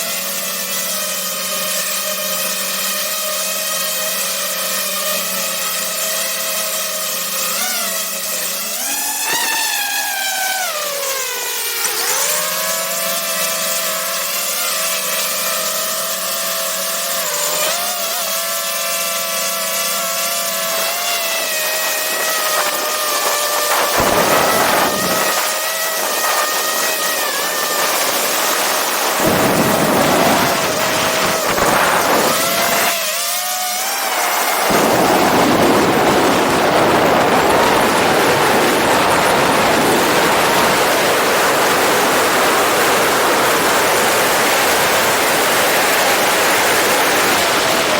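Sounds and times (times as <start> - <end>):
drone propellers whining: 8.4 - 14.3, 15.3 - 47.9
wind rushing over microphone: 21.8 - 33.0, 34.1 - 47.9.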